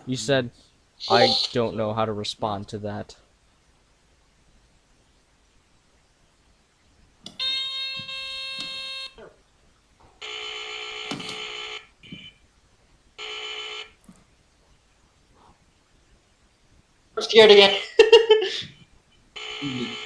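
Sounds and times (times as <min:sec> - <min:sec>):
smoke alarm horn buzzing: 0:07.3 - 0:09.2, 0:10.2 - 0:12.4, 0:13.2 - 0:14.0.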